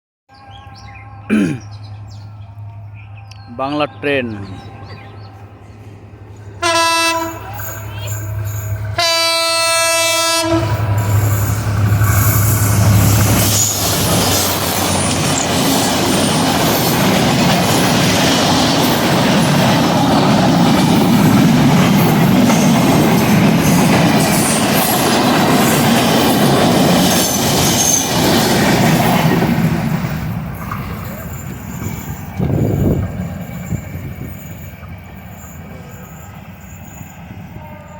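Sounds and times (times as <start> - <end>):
train horn blasts: 6.6 - 7.8, 8.4 - 11.4, 37.4 - 37.9
train wheels clattering on rails: 10.6 - 37.6.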